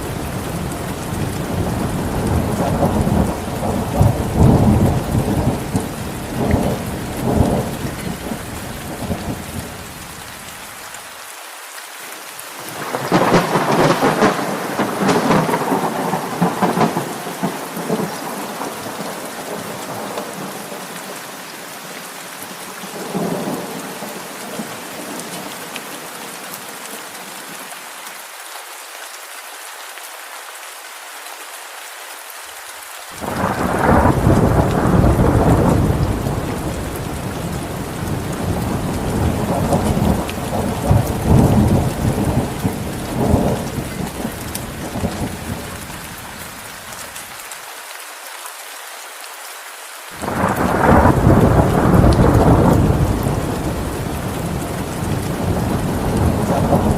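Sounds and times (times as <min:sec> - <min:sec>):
thunder rumbling: 0:00.0 - 0:09.7, 0:12.8 - 0:20.5, 0:33.2 - 0:45.8, 0:50.2 - 0:56.9
steady rain falling: 0:00.0 - 0:56.9.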